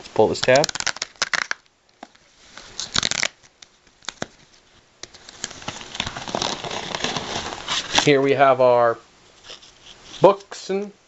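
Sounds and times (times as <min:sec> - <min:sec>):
cardboard packaging rustling: 0:00.2 - 0:08.2.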